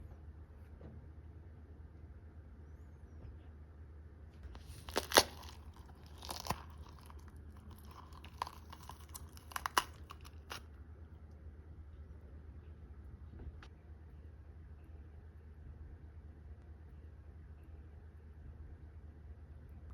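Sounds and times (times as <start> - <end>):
low steady hum: 0.0 - 19.9
crinkling handling noises: 4.5 - 10.6.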